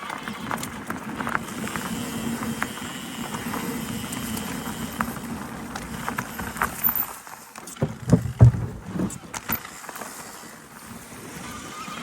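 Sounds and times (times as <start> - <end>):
bike tyres rolling over dirt: 0.1 - 11.0
bike clicks and rattles: 0.5 - 10.2
bike knock: 7.8 - 9.2.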